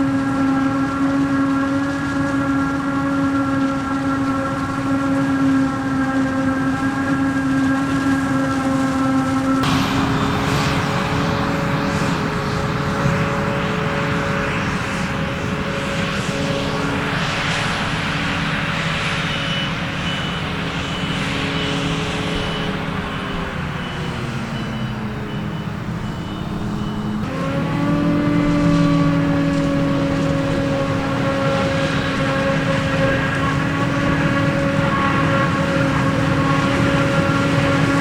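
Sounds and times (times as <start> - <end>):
diesel engines running: 0.0 - 38.0
faint high beep: 19.5 - 27.2.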